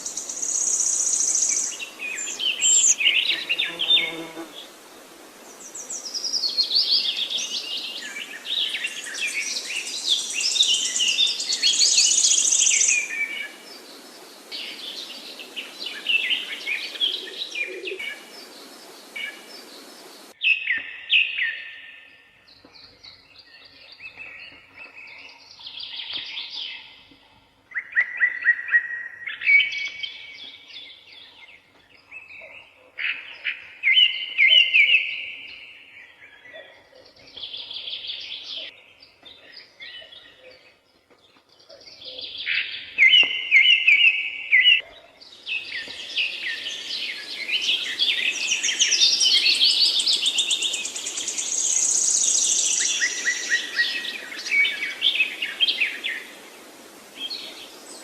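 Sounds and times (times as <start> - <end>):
steady hiss: 0.0 - 20.4, 46.0 - 58.0
songbirds singing: 0.0 - 58.0.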